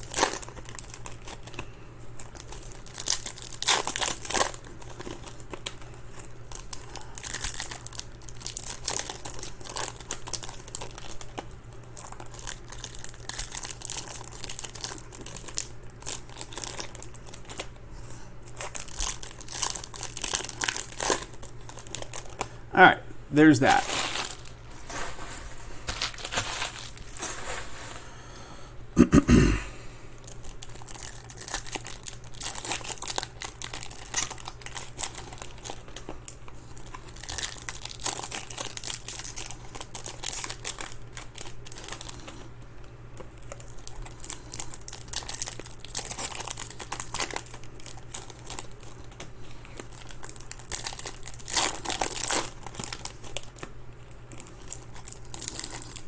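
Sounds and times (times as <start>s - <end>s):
foil wrappers crinkling: 0.0s - 22.6s, 23.4s - 28.6s, 30.2s - 56.0s.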